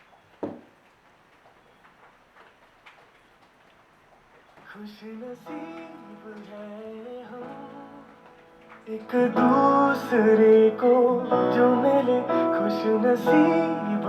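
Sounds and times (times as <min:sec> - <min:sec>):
faint clicks: 0:00.0 - 0:10.9
song from speaker: 0:04.7 - 0:14.0.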